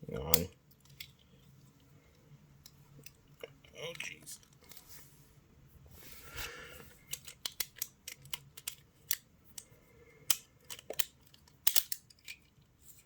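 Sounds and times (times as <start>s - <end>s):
plastic pieces clicking into place: 7.0s - 9.7s, 10.3s - 12.7s.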